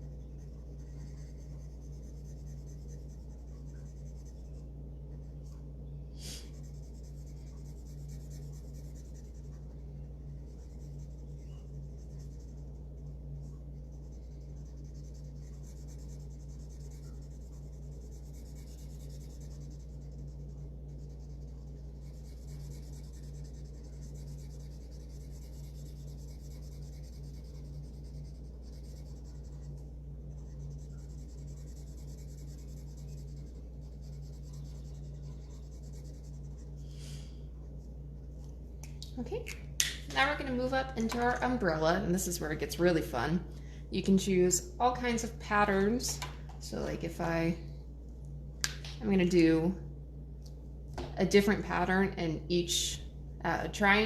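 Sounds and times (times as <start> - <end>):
low electrical hum: 0.0 - 54.0
coloring tip scratching on paper: 0.1 - 4.6, 6.3 - 13.1, 13.8 - 36.8.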